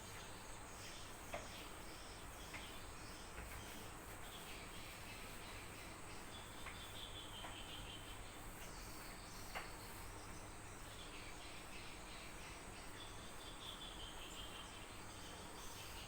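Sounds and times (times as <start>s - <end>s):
faint background noise: 0.0s - 16.0s.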